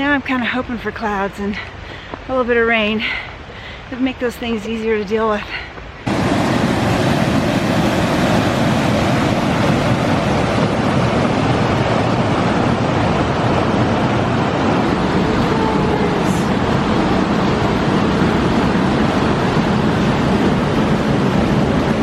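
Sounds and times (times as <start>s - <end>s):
rushing water roar: 5.8s - 22.0s.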